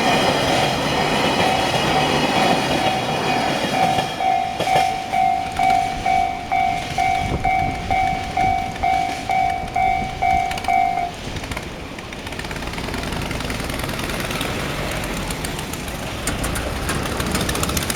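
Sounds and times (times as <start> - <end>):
electronic level-crossing alarm: 1.1 - 11.3
low rumble of road vehicles: 4.2 - 17.9.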